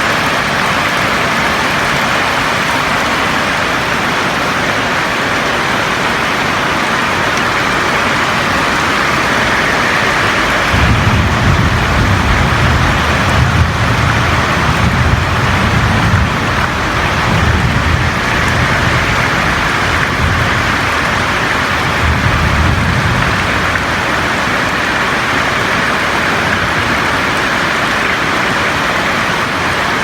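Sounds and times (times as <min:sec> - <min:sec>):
loud rain falling on a roof: 0:00.0 - 0:30.0
low rumble: 0:10.5 - 0:23.5.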